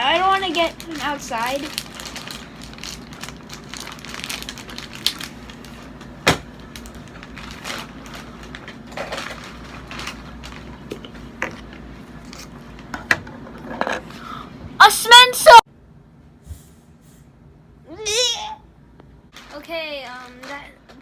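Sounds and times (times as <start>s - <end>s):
package rustling and crinkling: 0.0s - 12.6s.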